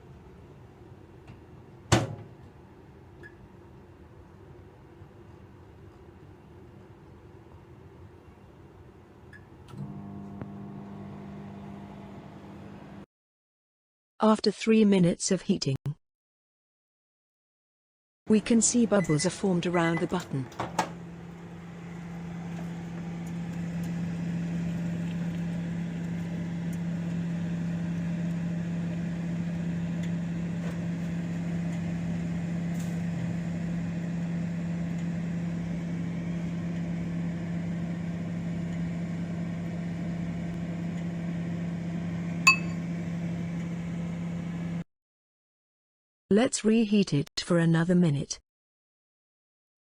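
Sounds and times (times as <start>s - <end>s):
microwave oven humming: 0.0s - 13.1s, 18.3s - 44.8s.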